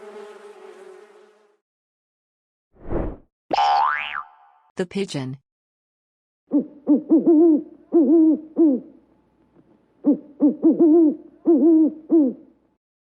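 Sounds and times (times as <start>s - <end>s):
pigeon cooing: 6.5s - 9.0s, 10.0s - 12.6s.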